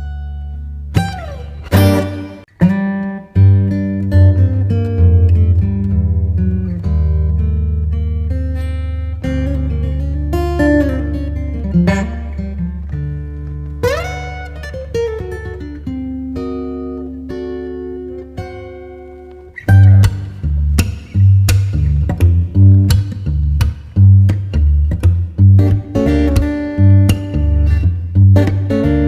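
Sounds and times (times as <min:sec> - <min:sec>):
plucked guitar: 0:00.0 - 0:29.0
low bass line: 0:19.7 - 0:29.0.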